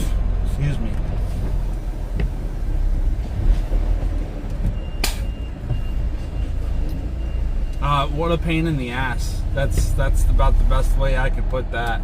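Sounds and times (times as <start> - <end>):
truck diesel engine rumbling: 0.0 - 12.0.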